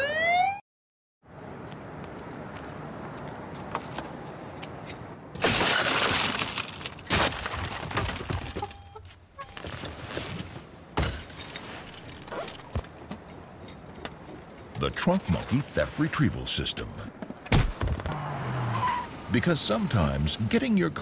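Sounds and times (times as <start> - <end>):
glass smashing: 5.4 - 8.4, 11.0 - 12.8.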